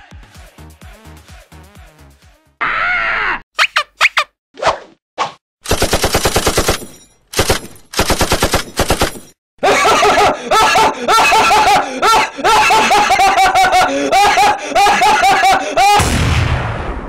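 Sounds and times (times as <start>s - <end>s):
machine-gun fire: 5.6s - 9.3s.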